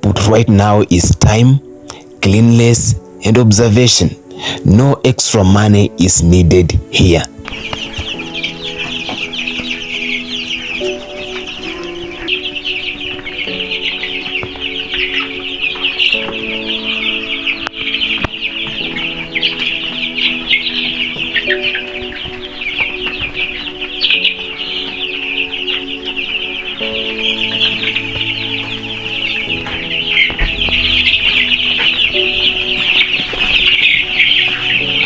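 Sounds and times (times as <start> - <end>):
background music of sustained chords: 0.0 - 35.0
chicks peeping: 0.0 - 35.0.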